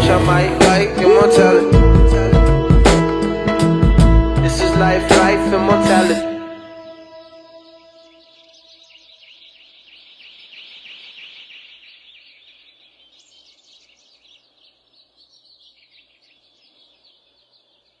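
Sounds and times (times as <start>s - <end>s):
small birds chirping: 6.7s - 18.0s.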